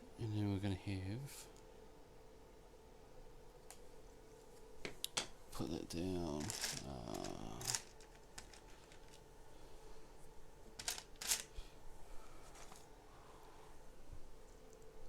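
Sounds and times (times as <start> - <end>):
faint steady hum: 0.0 - 15.0
plastic pieces clicking: 6.4 - 9.2, 10.8 - 11.5.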